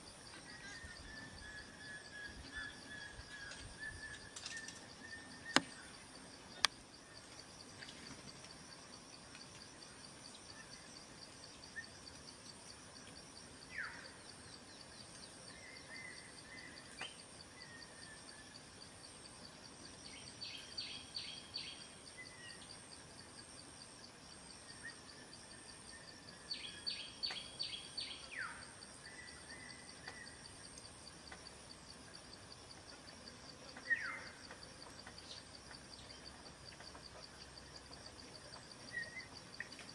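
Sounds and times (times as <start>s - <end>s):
high insect drone: 0.0s - 39.9s.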